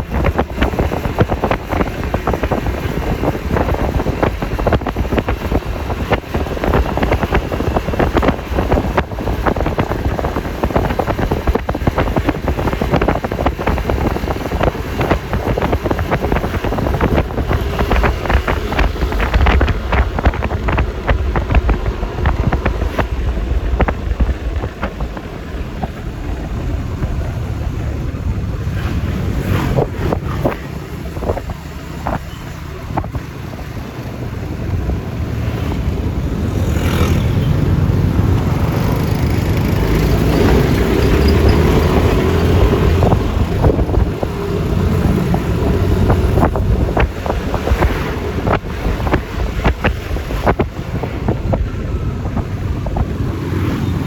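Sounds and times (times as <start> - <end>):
scooter engine and road noise: 0.0 - 54.0
wind buffeting microphone: 0.0 - 54.0.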